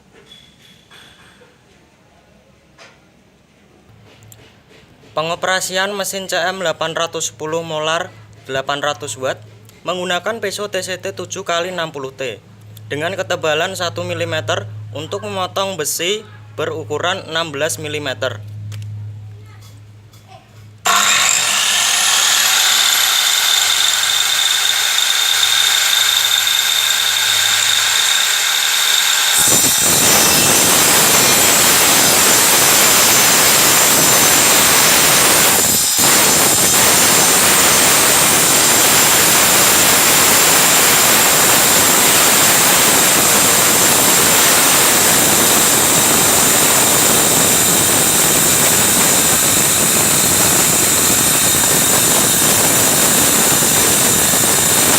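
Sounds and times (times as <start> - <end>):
circular saw whining: 20.9 - 54.9
saw cutting metal: 20.9 - 54.9.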